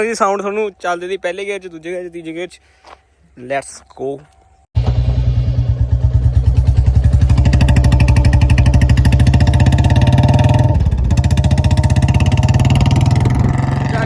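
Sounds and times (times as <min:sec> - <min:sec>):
motorcycle engine accelerating: 0:04.8 - 0:14.0.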